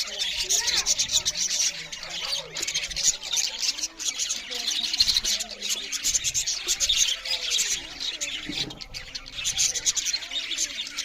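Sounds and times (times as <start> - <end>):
budgerigars chattering and chirping: 0.0 - 11.0.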